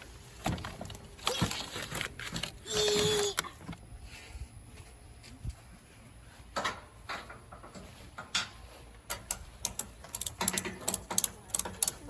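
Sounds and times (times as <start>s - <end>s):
tools tapping on wooden boards: 6.6s - 12.0s.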